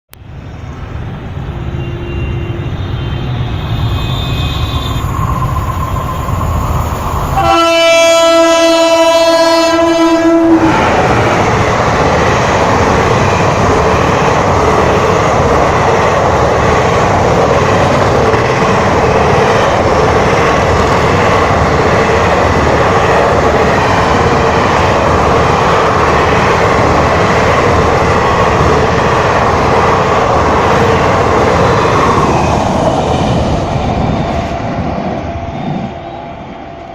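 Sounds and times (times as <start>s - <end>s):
train passing: 0.1s - 36.9s
train horn: 1.7s - 5.1s, 7.4s - 10.8s.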